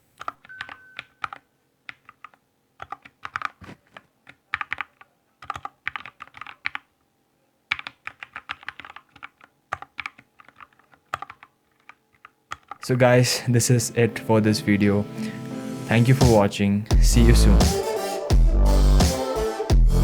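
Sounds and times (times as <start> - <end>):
typing on mechanical keyboard: 0.2 - 6.9, 7.7 - 12.8.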